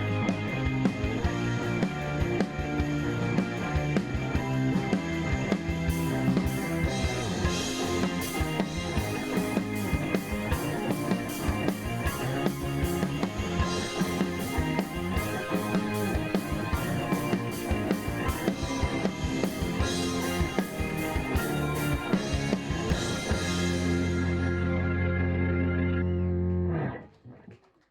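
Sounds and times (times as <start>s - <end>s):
steady drum beat: 0.0s - 24.5s
instrumental rock music: 0.0s - 27.1s
guitar: 0.0s - 27.8s.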